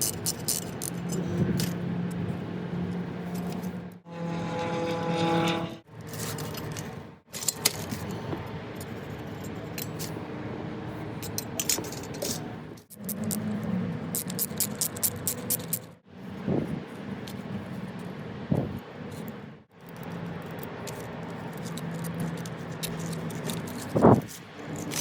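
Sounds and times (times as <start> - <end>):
small metal parts clinking: 0.0 - 1.8, 19.9 - 24.0, 24.6 - 25.0
steady low hum: 2.3 - 5.8.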